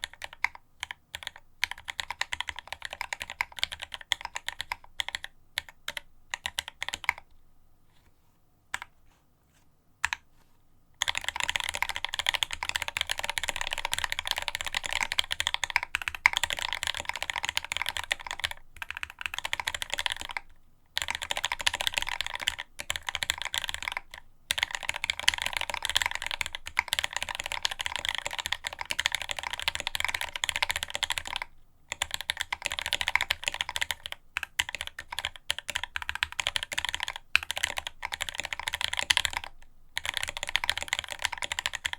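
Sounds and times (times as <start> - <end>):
fast mechanical keyboard typing: 0.0 - 7.3, 11.0 - 41.9.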